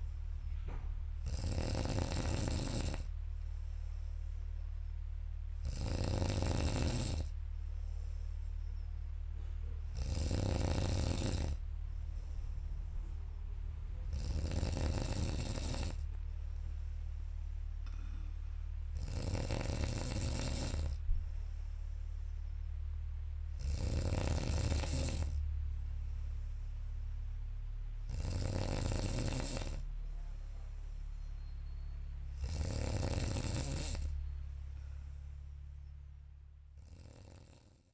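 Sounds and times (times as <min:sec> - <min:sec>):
steady low hum: 0:00.0 - 0:37.9
person snoring loudly: 0:01.2 - 0:03.1, 0:05.6 - 0:07.3, 0:09.9 - 0:11.6, 0:14.1 - 0:16.0, 0:17.8 - 0:21.0, 0:23.5 - 0:25.4, 0:28.1 - 0:29.9, 0:32.4 - 0:34.2, 0:36.8 - 0:37.8.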